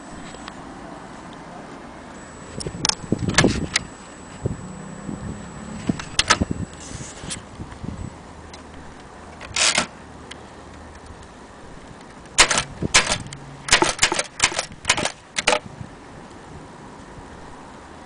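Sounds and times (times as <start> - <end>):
typewriter keys striking: 12.4 - 15.6.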